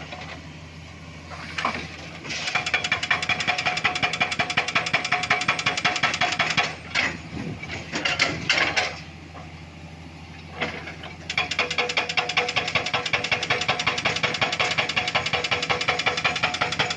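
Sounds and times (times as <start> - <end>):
excavator engine running: 0.0 - 16.9
hydraulic breaker hammering rock: 1.6 - 7.2, 11.3 - 16.9.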